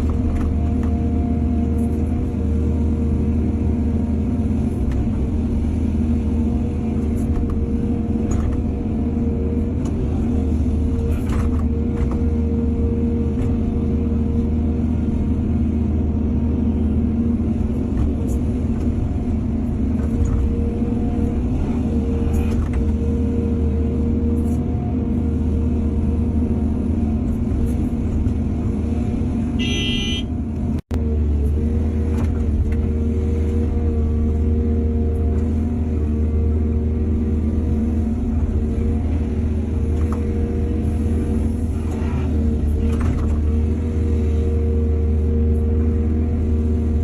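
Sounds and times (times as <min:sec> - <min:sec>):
diesel machinery engine rumble: 0:00.0 - 0:47.0.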